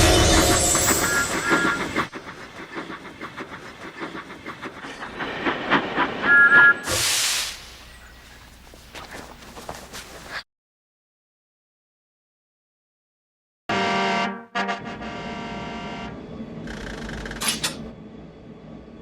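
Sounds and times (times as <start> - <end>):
steam train clattering on rails: 0.0 - 10.4
steam hissing: 0.4 - 8.8
train whistle toots: 13.7 - 16.2.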